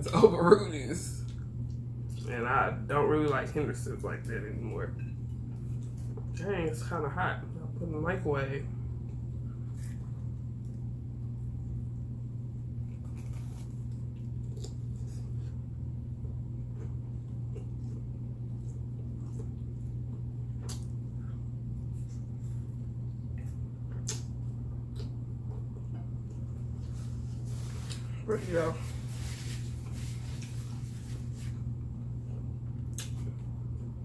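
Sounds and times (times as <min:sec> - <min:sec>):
steady low hum: 0:00.0 - 0:34.0
eating and food handling clicks: 0:23.9 - 0:25.2, 0:32.8 - 0:33.4.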